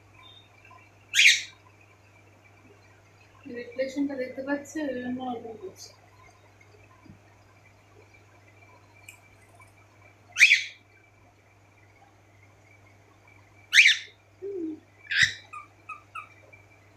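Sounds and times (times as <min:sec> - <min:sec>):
faint steady hum: 0:00.0 - 0:16.9
cockatiel calls: 0:01.2 - 0:01.5, 0:10.4 - 0:10.8, 0:13.7 - 0:14.1, 0:15.1 - 0:16.4.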